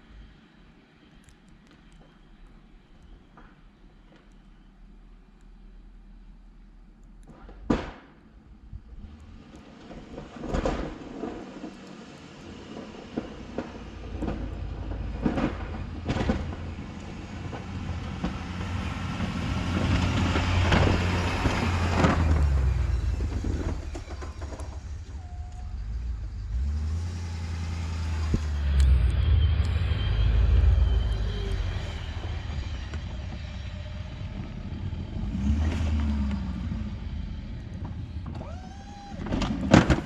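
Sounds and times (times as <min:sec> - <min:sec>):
pickup truck engine rumble: 0:00.0 - 0:40.0
clunks and rattles: 0:09.0 - 0:11.8, 0:12.7 - 0:26.6, 0:37.6 - 0:40.0.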